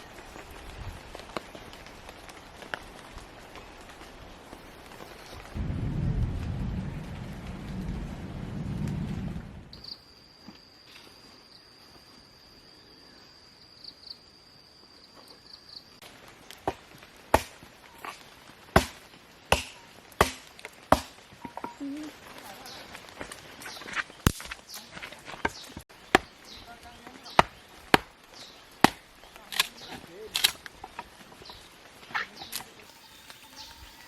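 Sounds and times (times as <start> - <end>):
low rumble: 5.5 - 9.8
insect buzzing: 32.8 - 34.0.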